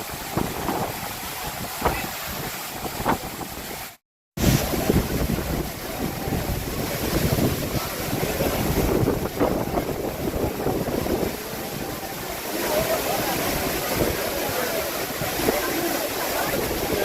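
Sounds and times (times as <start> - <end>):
wind buffeting microphone: 0.0 - 12.4
waterfall rushing: 0.0 - 17.0.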